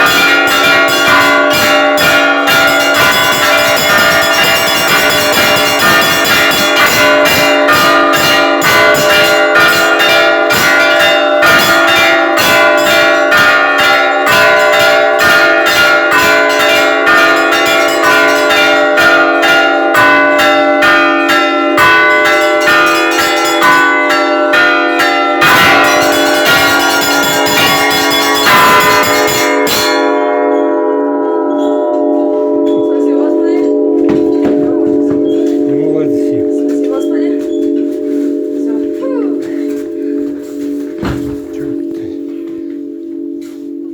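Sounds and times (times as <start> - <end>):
church bells ringing: 0.0 - 43.9.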